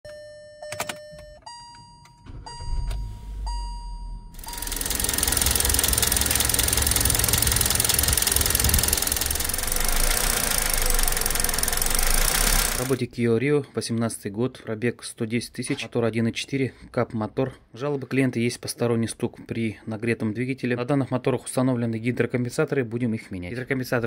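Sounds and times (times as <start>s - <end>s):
engine running with rapid knock: 4.4s - 13.0s.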